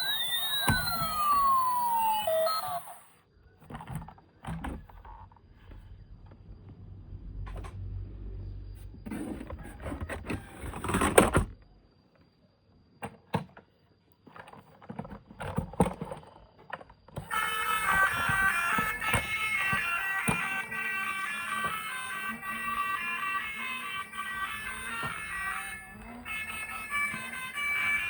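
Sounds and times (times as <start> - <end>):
music: 17.3 - 28.0.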